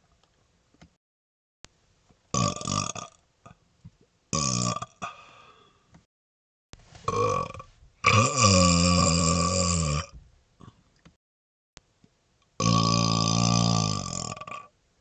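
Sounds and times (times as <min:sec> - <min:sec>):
man burping: 0:02.3 - 0:03.2, 0:04.3 - 0:05.3, 0:07.1 - 0:10.1, 0:12.6 - 0:14.7.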